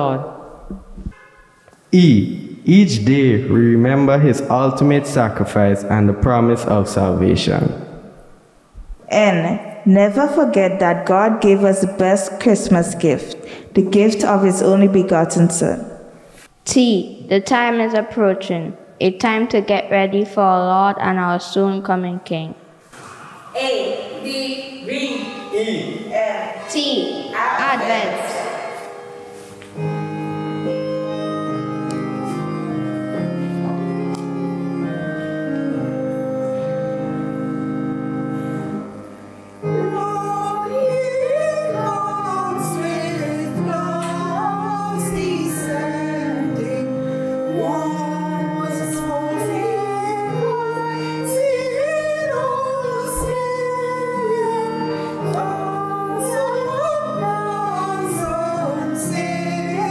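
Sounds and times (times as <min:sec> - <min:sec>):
keyboard chords: 0:00.0 - 0:22.5, 0:23.6 - 0:59.9
woman singing: 0:39.7 - 0:59.9.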